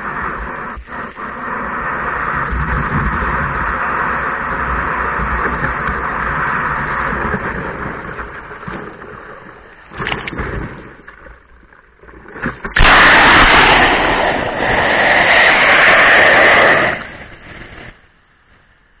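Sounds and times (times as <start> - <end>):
rushing wind: 0.0 - 11.1, 12.2 - 18.7
rushing water: 5.4 - 17.2.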